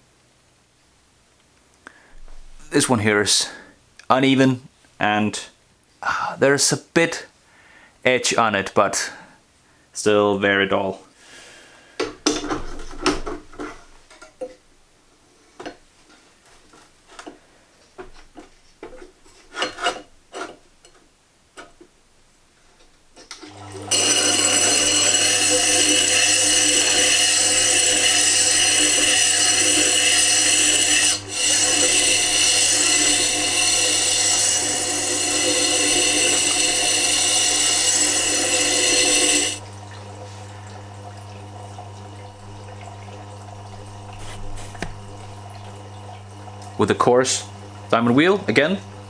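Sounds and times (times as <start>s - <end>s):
sharpener grinding chisel: 23.5s - 39.8s, 43.7s - 45.4s.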